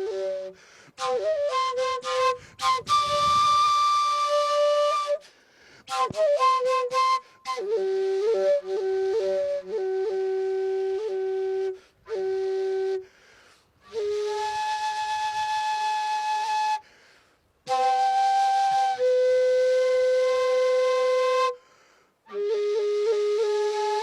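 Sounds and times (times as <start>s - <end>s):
breathy duct flute: 0.0s - 14.4s.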